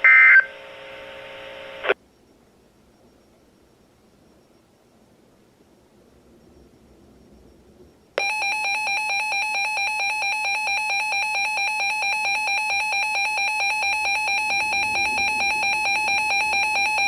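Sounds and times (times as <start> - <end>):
pulsing buzzy alarm tone: 6.1 - 17.0.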